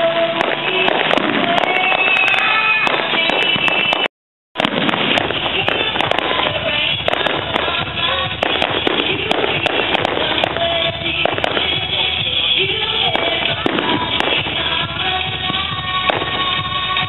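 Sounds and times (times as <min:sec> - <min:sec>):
music playing: 0:00.0 - 0:04.0, 0:04.6 - 0:17.0
fireworks bangs and crackles: 0:00.0 - 0:17.0.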